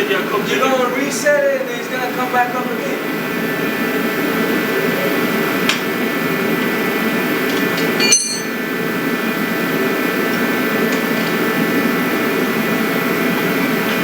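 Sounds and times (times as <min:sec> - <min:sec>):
steady background hum: 0:00.0 - 0:14.0
metal tool clinking on metal: 0:08.0 - 0:08.6.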